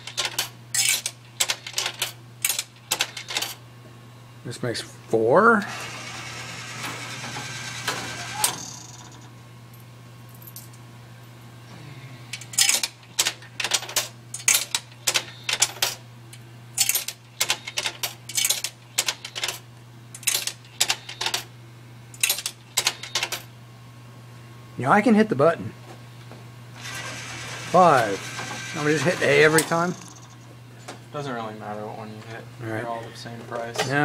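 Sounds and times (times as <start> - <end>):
coins clicking through coin slot: 0.0 - 3.6, 6.7 - 9.3, 12.4 - 16.0, 16.8 - 21.5, 22.2 - 23.5, 26.8 - 30.4
vending machine mechanism running: 0.0 - 3.6, 5.4 - 9.4, 12.3 - 21.5, 22.1 - 23.5, 26.7 - 30.5
steady low hum: 0.0 - 34.0.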